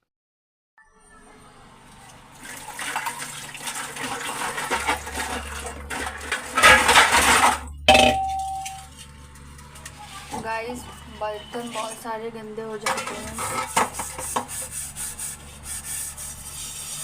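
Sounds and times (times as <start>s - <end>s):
metal dishes clattering: 4.5s - 8.9s, 12.8s - 14.4s
metal vessel ringing: 7.8s - 8.9s.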